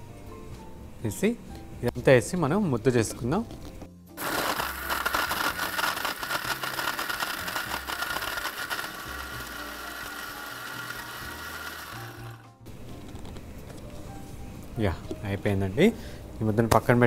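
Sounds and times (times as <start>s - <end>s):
electric mixer-grinder running: 4.2s - 12.5s.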